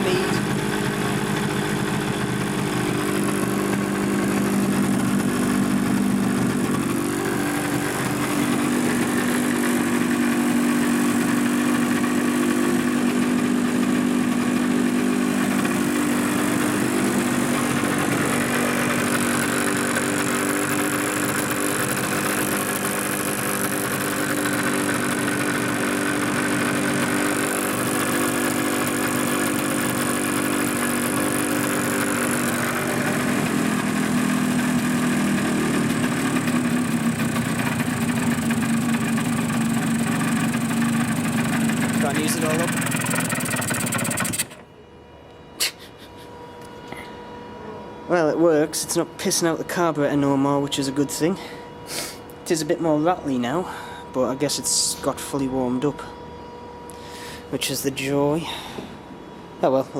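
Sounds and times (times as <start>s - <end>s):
engine rattle: 0.0s - 44.7s
two-stroke engine running: 0.0s - 44.7s.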